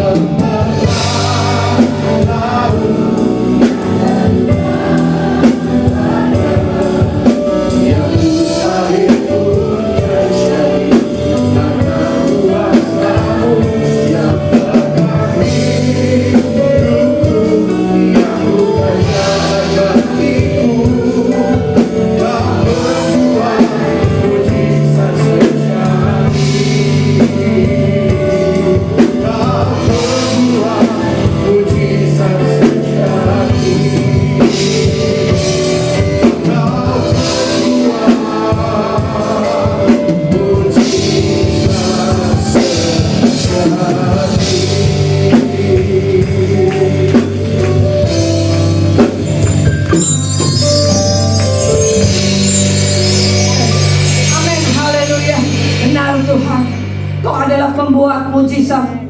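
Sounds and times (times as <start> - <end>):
people singing: 0.0 - 56.8
drum kit: 0.0 - 57.7
guitar playing: 0.0 - 58.2.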